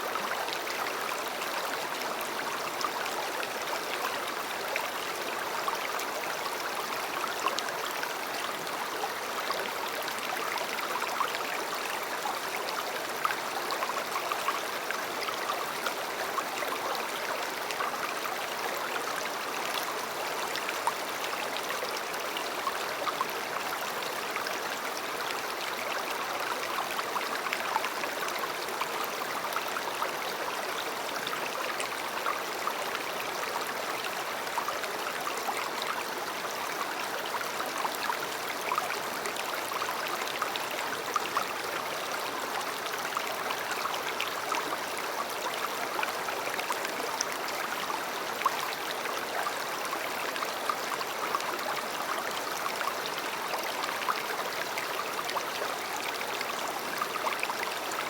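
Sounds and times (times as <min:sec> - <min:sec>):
river water flowing: 0:00.0 - 0:58.0.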